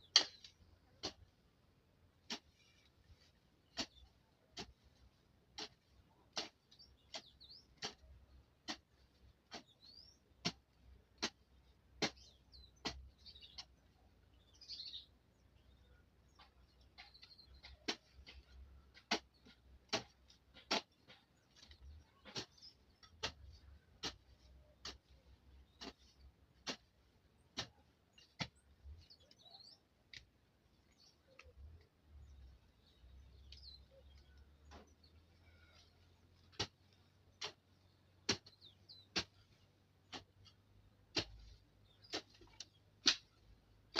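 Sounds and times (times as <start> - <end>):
hand tool striking ground: 0.0 - 1.4, 2.2 - 2.8, 3.4 - 13.8, 16.3 - 30.3, 35.9 - 43.9
birds chirping faintly: 0.0 - 43.9.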